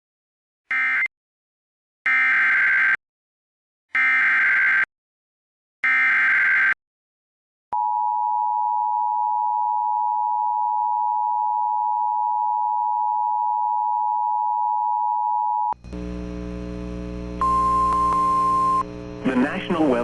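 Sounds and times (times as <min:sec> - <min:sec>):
low broadcast hum: 0:15.8 - 0:20.0.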